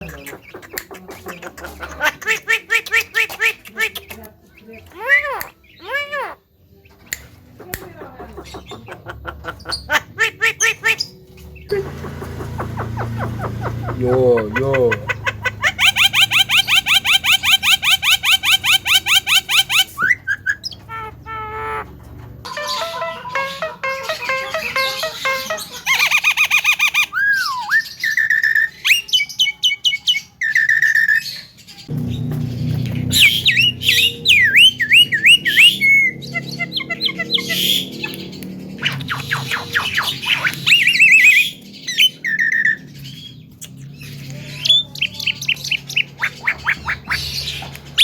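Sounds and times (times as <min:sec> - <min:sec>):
bird calling harsh repeated notes: 0:08.3 - 0:43.4, 0:44.6 - 0:48.0
low hum: 0:31.9 - 0:36.8.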